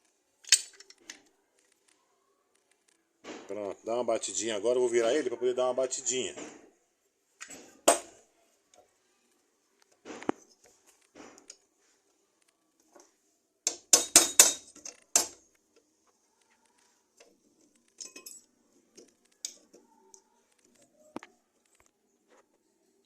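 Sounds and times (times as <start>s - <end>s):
metal parts knocking and clinking: 0.4s - 1.2s, 13.7s - 15.5s, 17.7s - 19.8s.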